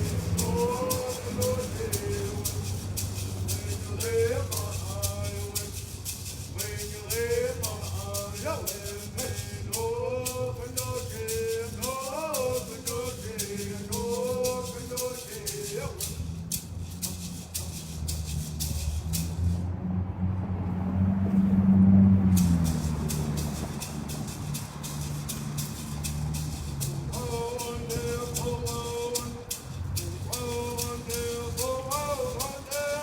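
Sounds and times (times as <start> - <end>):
person singing a chant: 0.0 - 16.3, 26.7 - 33.0
hand rattle shaken: 0.0 - 19.6, 22.2 - 33.0.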